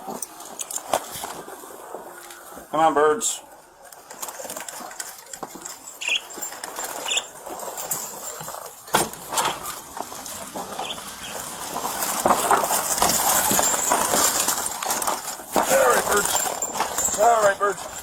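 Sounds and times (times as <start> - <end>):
rustling and clattering handling: 0.0 - 2.7, 3.5 - 18.0
wings fluttering: 4.2 - 7.5, 9.3 - 14.2
pet birds chirping: 5.9 - 7.4, 10.6 - 11.5.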